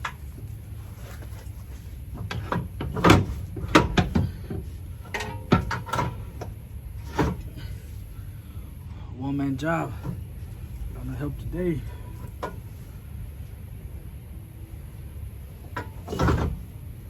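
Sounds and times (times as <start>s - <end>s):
steady low hum: 0.0s - 17.0s
metal tools clanking: 2.2s - 7.8s.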